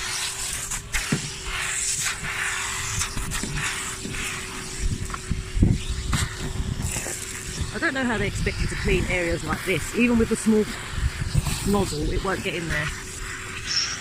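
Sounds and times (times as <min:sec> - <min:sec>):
vacuum cleaner running: 0:00.0 - 0:14.0.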